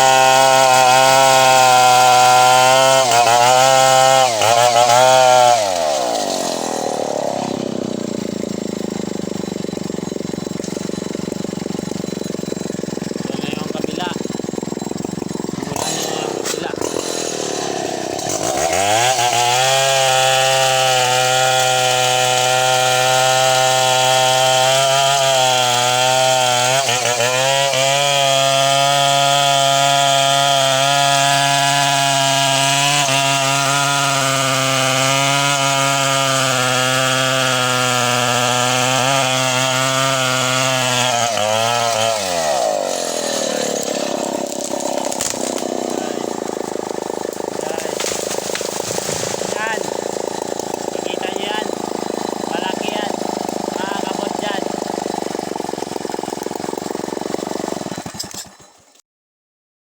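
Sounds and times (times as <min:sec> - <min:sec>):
chainsaw cutting wood: 0:00.0 - 0:59.0.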